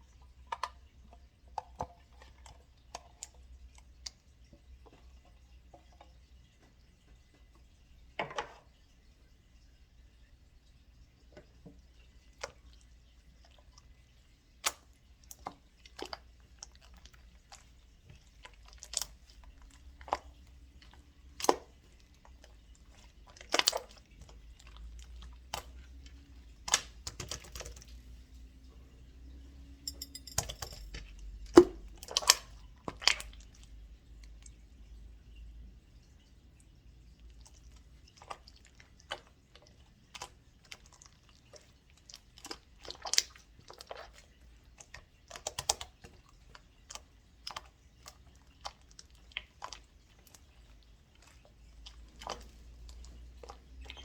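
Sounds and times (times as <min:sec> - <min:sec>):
spoon clicking and tapping: 0:29.8 - 0:31.0.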